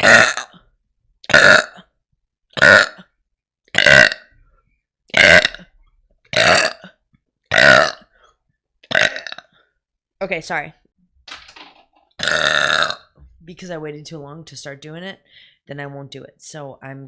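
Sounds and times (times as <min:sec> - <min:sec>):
person burping loudly: 0:00.0 - 0:04.4, 0:05.1 - 0:08.2, 0:08.8 - 0:09.6, 0:12.1 - 0:13.2.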